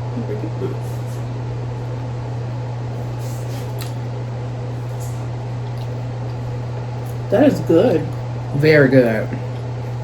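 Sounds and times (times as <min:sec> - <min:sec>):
steady low hum: 0:00.0 - 0:10.0
person chewing with mouth clicks: 0:03.6 - 0:04.0, 0:05.5 - 0:07.2.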